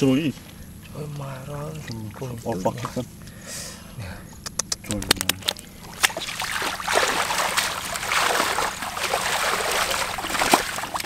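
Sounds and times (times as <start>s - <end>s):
sharp clicks: 4.4s - 5.6s
shallow water splashing: 5.4s - 11.0s.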